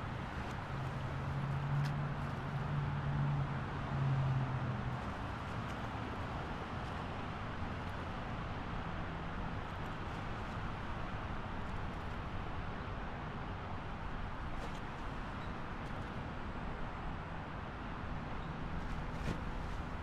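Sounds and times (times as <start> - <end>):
highway traffic roar: 0.0 - 20.0.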